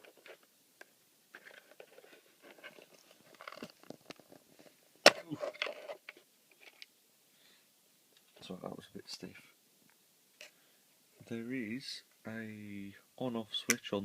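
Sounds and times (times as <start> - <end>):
plastic rustles and clicks: 1.3 - 6.9.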